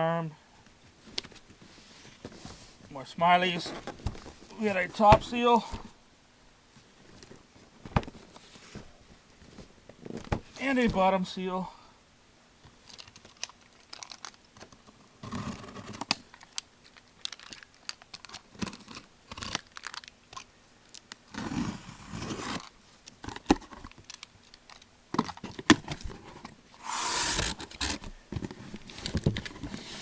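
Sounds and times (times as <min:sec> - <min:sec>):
packaging tearing and crinkling: 0:12.8 - 0:14.7, 0:15.3 - 0:25.8.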